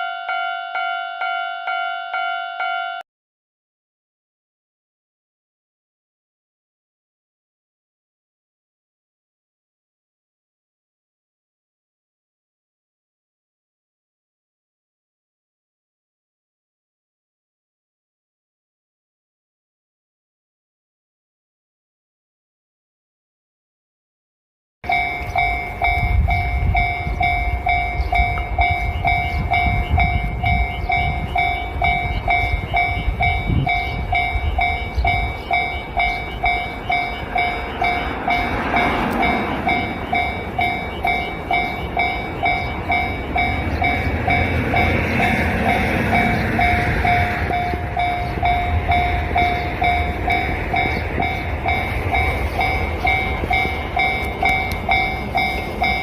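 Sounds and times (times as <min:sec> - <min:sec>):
level crossing warning bell: 0:00.0 - 0:03.0, 0:24.8 - 0:56.0
train passing: 0:24.8 - 0:56.0.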